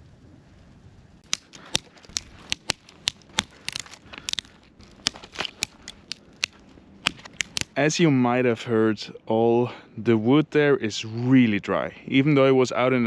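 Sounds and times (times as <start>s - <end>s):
firewood clacking together: 1.2s - 7.8s.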